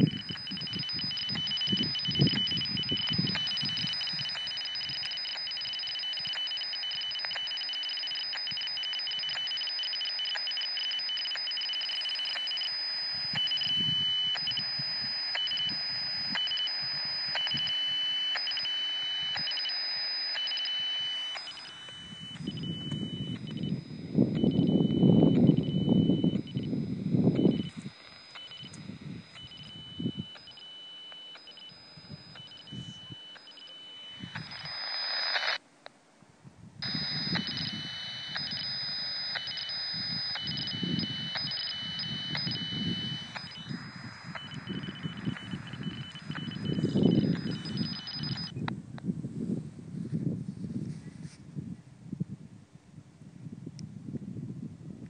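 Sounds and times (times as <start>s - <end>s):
steady high radio tones: 0.0s - 35.7s, 36.8s - 49.1s
radio hiss: 12.2s - 35.6s, 36.8s - 48.5s.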